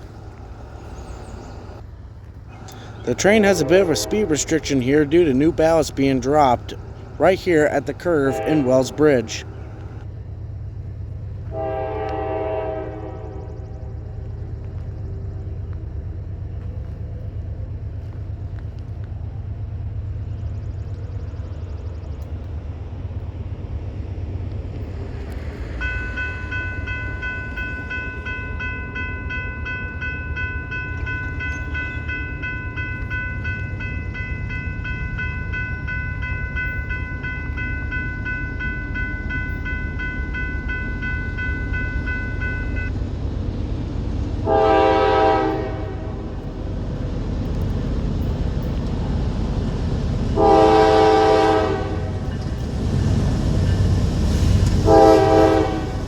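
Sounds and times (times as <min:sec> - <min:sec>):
diesel locomotive rumbling: 0:00.0 - 0:56.0
locomotive air horn blasts: 0:02.7 - 0:06.5, 0:08.0 - 0:09.4, 0:11.5 - 0:13.7, 0:44.4 - 0:46.4, 0:50.3 - 0:52.3, 0:54.8 - 0:56.0.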